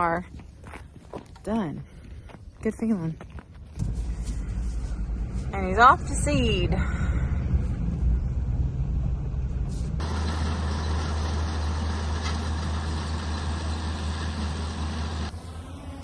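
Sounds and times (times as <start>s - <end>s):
tractor engine running: 3.7s - 16.0s.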